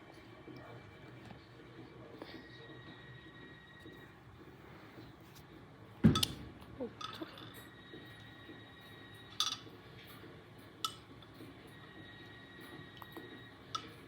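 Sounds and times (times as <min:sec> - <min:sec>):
light clinks with ringing tone: 0:07.0 - 0:09.7.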